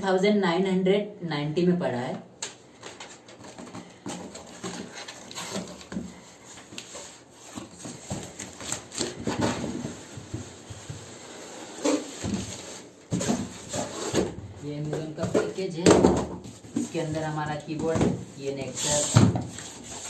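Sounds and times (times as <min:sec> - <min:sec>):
cardboard rubbing and rustling: 0:03.1 - 0:14.4, 0:16.4 - 0:20.0.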